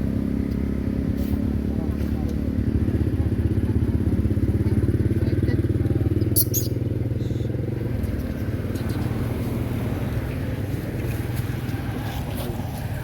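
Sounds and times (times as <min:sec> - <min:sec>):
motor vehicle engine humming: 0:00.0 - 0:13.0.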